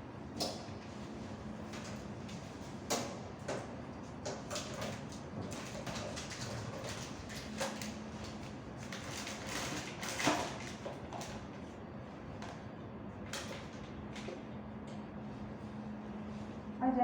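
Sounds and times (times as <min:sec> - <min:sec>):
steady low hum: 0:00.0 - 0:04.4.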